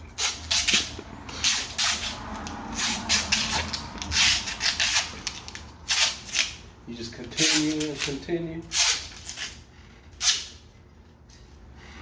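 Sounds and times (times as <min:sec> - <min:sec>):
masking tape ripping off roll: 0:00.1 - 0:06.6, 0:07.2 - 0:09.6, 0:10.2 - 0:10.6.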